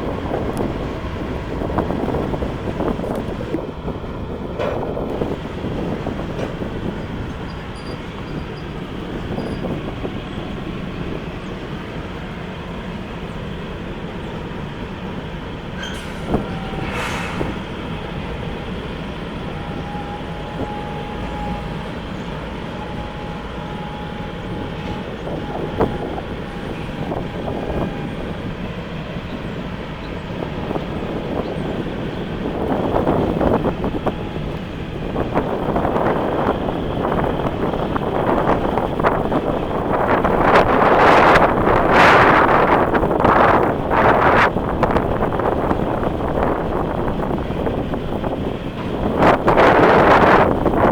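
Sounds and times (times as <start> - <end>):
sharp knocks of train cars: 0.0 - 10.1
freight train rolling on rails: 0.0 - 50.9
wheel squeal: 6.4 - 9.8, 15.8 - 18.0.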